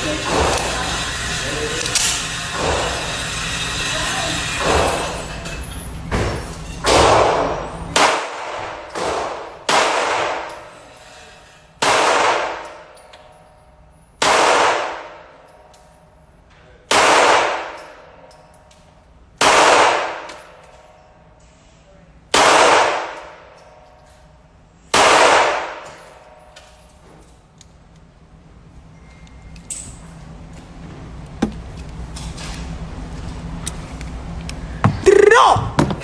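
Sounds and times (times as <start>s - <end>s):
gunshots echoing: 6.9s - 10.6s, 11.8s - 12.8s, 14.2s - 15.3s, 16.9s - 18.0s, 19.4s - 20.4s, 22.3s - 23.4s, 24.9s - 26.0s.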